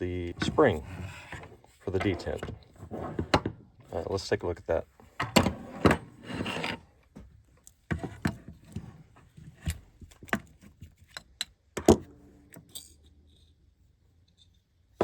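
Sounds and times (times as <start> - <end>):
metallic clicks of small parts: 12.5 - 13.5.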